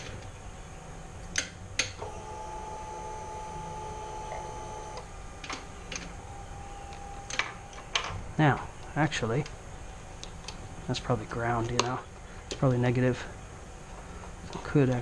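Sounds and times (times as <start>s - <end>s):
faint steady tone: 2.0s - 11.0s.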